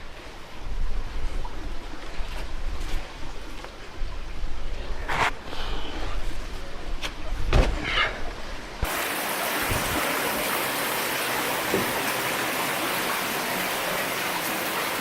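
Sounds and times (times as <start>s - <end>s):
stream water rushing: 8.8s - 15.0s.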